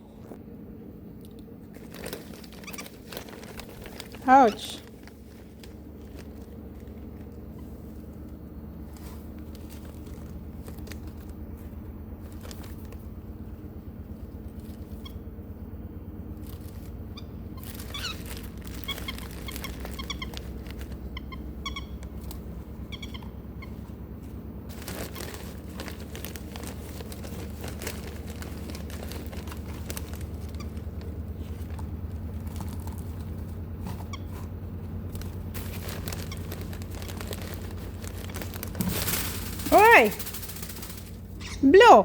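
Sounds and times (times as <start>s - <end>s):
steady low hum: 0.0s - 42.0s
lovebird chirping: 17.0s - 23.9s, 41.3s - 42.0s.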